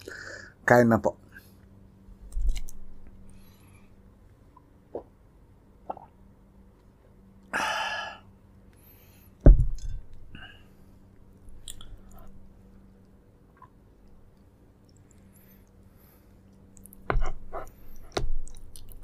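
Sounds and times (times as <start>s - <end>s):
heavy thump: 9.4s - 10.0s
soft chewing: 9.8s - 19.0s.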